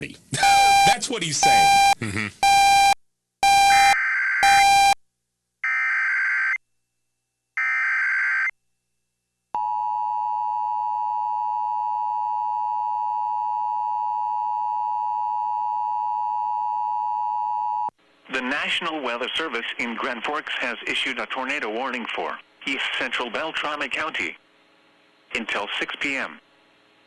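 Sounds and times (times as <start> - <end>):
digital data bursts: 0.4 - 5.0
steady warning alarm tone: 0.4 - 5.0.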